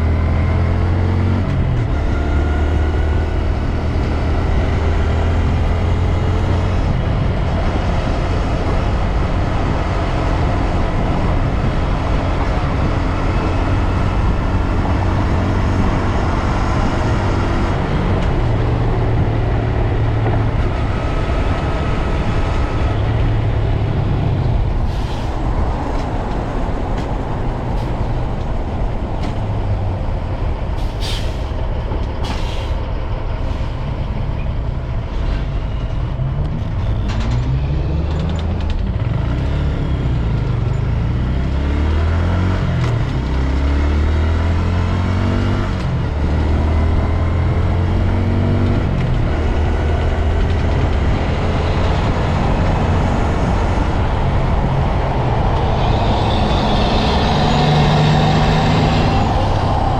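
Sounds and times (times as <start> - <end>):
road rumble: 0.0 - 59.9
wind on microphone: 45.7 - 59.9.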